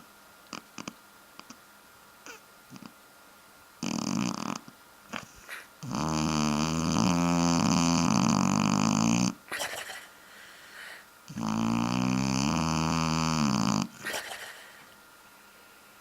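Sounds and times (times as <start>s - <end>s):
dog snoring: 0.5s - 1.6s, 2.3s - 2.9s, 3.8s - 10.0s, 11.3s - 14.8s.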